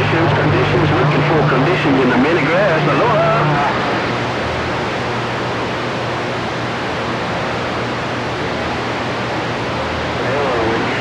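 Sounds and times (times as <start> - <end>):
radio static hiss: 0.0 - 6.5, 9.4 - 11.0
faint low hum: 0.0 - 11.0.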